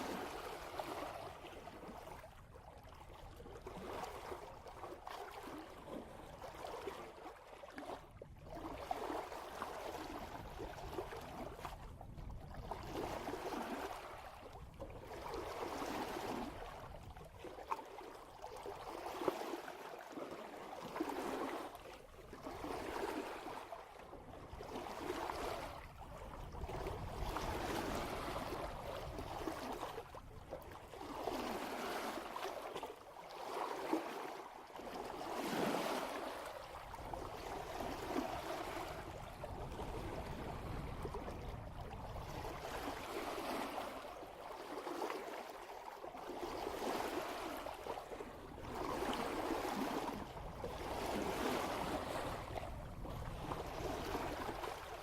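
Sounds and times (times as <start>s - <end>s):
water rushing past boat hull: 20.7s - 45.4s, 46.5s - 55.0s.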